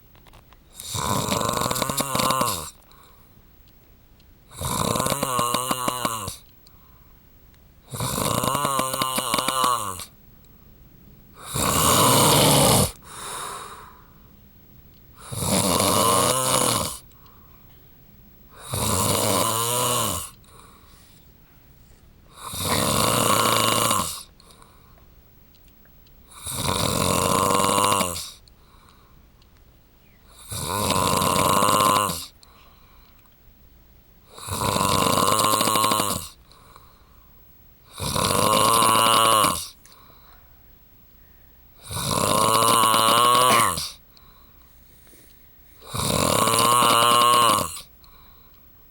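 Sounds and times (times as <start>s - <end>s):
man snoring: 0.8s - 2.8s, 4.5s - 6.4s, 7.9s - 10.2s, 11.4s - 13.9s, 15.2s - 17.1s, 18.5s - 20.4s, 22.3s - 24.3s, 26.3s - 28.4s, 30.4s - 32.4s, 34.3s - 36.4s, 37.9s - 39.8s, 41.8s - 44.0s, 45.8s - 47.9s.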